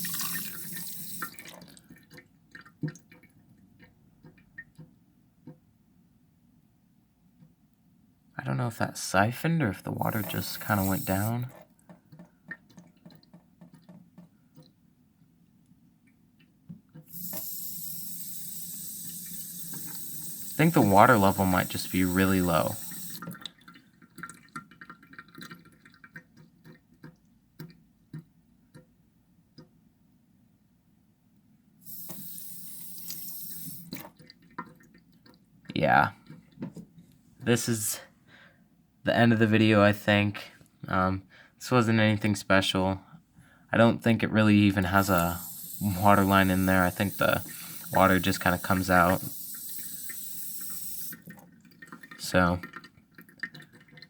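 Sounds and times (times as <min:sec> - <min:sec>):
water dripping and trickling: 0:00.0 - 0:05.6, 0:10.0 - 0:15.3, 0:16.0 - 0:28.9, 0:31.9 - 0:36.7, 0:44.8 - 0:54.0.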